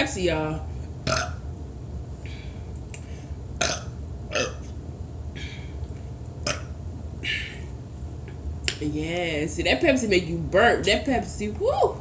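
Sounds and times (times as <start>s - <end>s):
woman burping: 1.1s - 1.4s, 3.6s - 4.6s, 6.5s - 6.7s.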